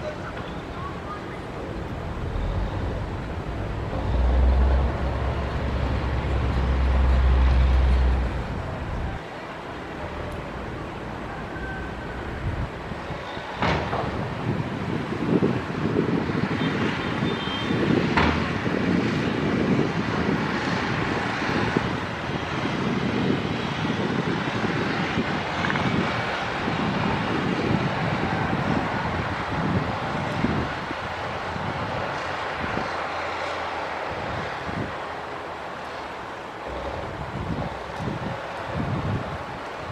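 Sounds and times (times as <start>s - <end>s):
diesel machinery rumbling: 0.0s - 13.3s, 26.4s - 39.9s.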